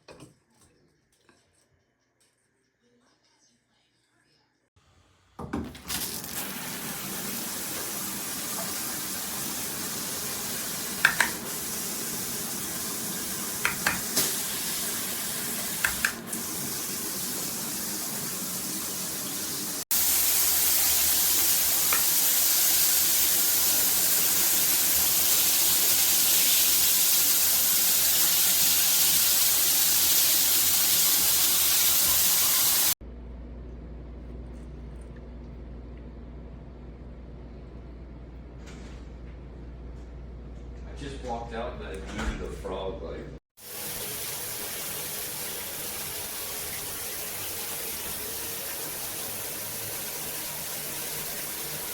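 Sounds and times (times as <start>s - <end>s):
water spraying from shower head: 5.8s - 33.0s, 43.6s - 51.9s
sharp clicks or knocks: 11.0s - 11.4s.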